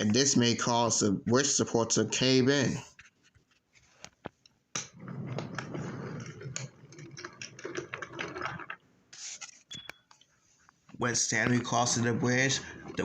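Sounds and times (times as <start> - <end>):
toy train rolling on wooden track: 4.9 - 8.8.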